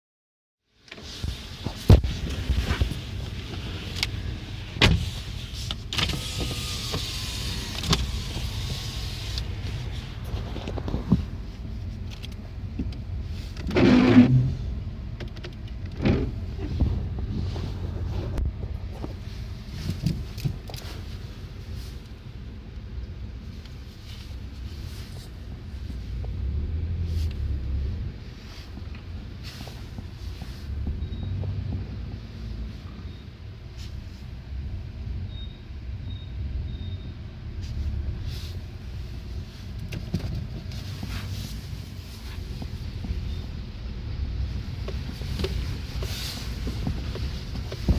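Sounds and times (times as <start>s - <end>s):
low car rumble: 1.0s - 47.9s
car squeaking: 4.8s - 12.3s, 13.3s - 18.4s, 29.5s - 31.9s, 39.9s - 43.7s.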